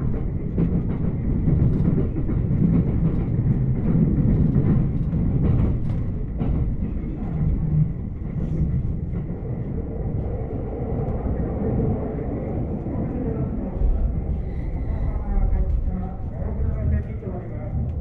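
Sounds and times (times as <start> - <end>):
train rumble inside carriage: 0.0 - 18.0.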